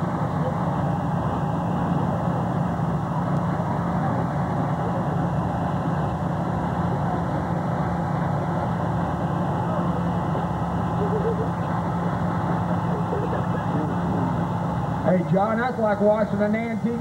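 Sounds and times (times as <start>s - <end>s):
diesel tractor engine: 0.0s - 17.0s.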